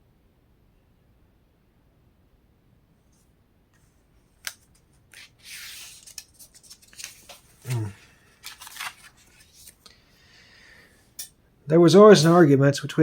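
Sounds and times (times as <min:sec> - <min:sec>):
book pages rustling: 0:03.1 - 0:09.9.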